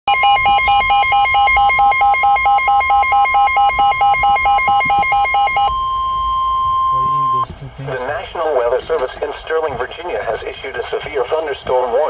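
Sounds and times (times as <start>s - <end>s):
low buzzy pulsing beep: 0.1s - 7.5s
steady alarm tone: 0.1s - 7.5s.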